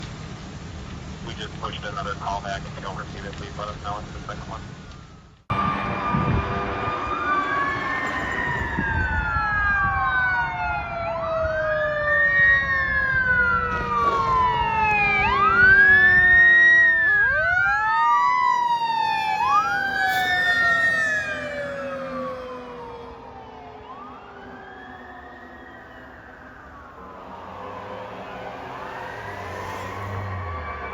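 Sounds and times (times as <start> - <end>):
fire truck siren wailing: 1.2 - 30.9
second lower siren wail: 4.0 - 30.9
lower siren tone sliding down: 4.1 - 30.9.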